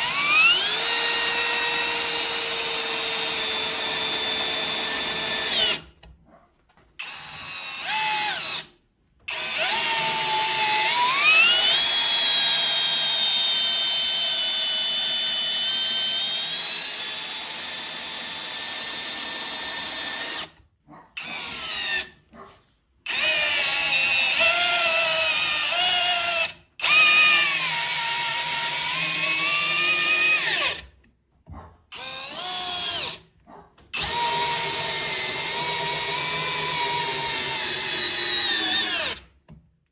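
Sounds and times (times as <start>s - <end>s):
cordless drill motor whine: 0.0s - 5.8s, 9.3s - 20.5s, 23.1s - 30.8s, 32.0s - 33.2s, 34.0s - 39.2s.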